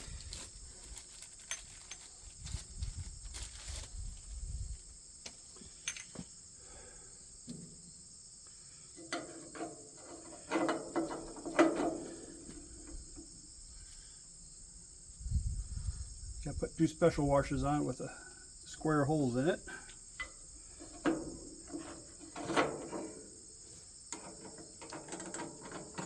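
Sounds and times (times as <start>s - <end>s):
insects chirring: 0.0s - 26.0s
metal parts clanking: 5.8s - 6.2s, 24.2s - 26.0s.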